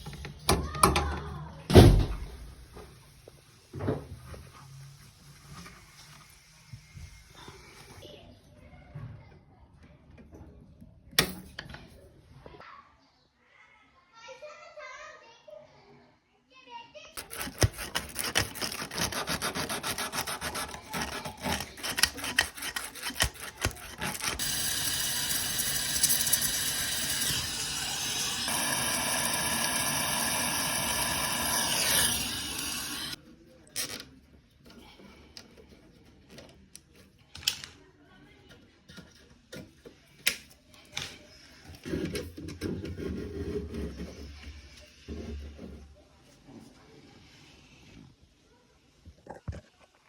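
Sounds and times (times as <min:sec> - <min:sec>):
filing metal tubing: 0:17.2 - 0:33.2.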